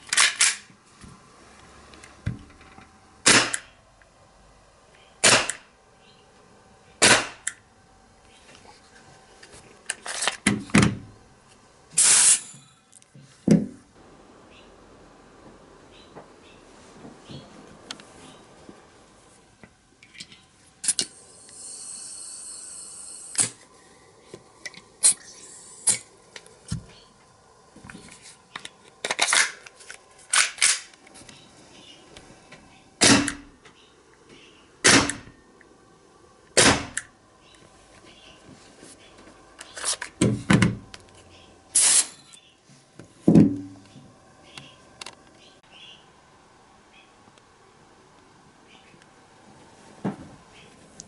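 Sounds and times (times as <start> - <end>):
airsoft gun shots: 3.2 - 3.6, 5.2 - 5.7, 7.0 - 7.4, 33.0 - 33.4, 34.8 - 35.2, 36.6 - 37.0
gas hissing: 11.9 - 12.7, 20.8 - 28.6, 41.7 - 42.3.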